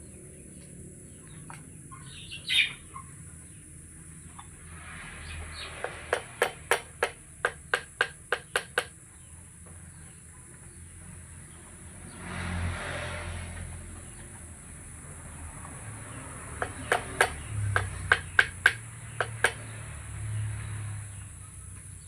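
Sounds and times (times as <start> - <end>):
sharp clicks: 5.8 - 9.0, 16.6 - 19.7.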